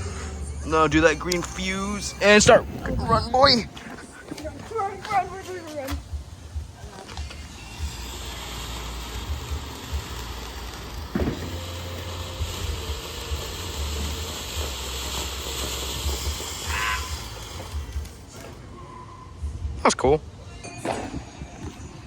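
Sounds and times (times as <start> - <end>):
firework sparks hissing: 0.0 - 18.9
wind buffeting microphone: 0.0 - 20.4.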